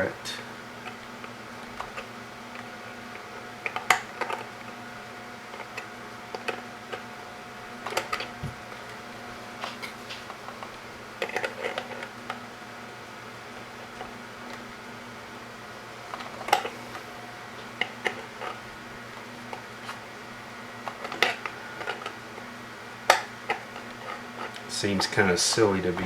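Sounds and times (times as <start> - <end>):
steady low hum: 0.0 - 26.0
small parts and tools clicking: 20.8 - 22.1.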